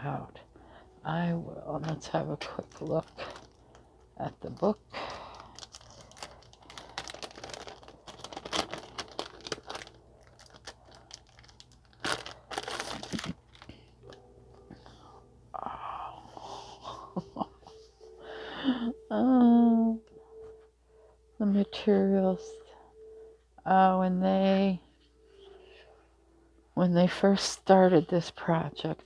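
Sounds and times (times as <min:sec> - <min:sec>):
paper and packaging crinkling: 0:01.7 - 0:14.9
sharp crackles: 0:04.4 - 0:13.9.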